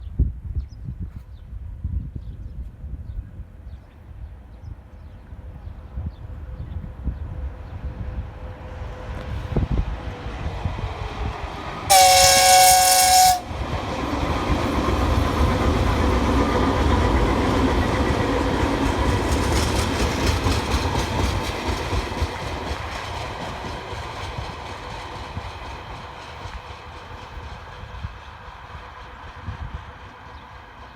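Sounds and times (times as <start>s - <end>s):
train rumbling past: 4.1s - 30.9s
locomotive horn two-note blast: 11.9s - 13.5s.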